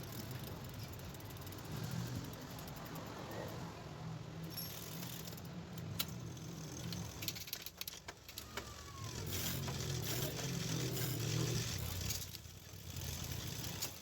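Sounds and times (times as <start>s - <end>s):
light metallic clicks and jangling: 4.4s - 6.2s.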